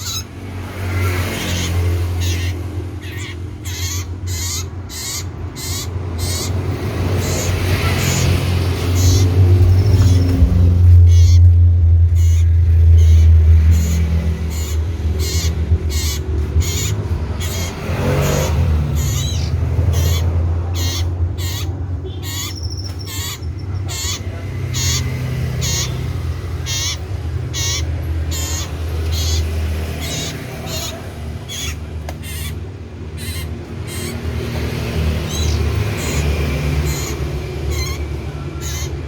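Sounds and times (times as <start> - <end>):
bird calling with sharp notes: 0.0 - 39.0
low rumbling hum: 1.7 - 30.0.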